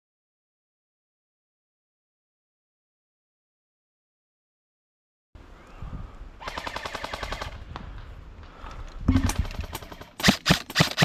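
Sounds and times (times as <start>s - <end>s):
airsoft rifle shots: 6.4s - 7.6s, 9.1s - 11.0s.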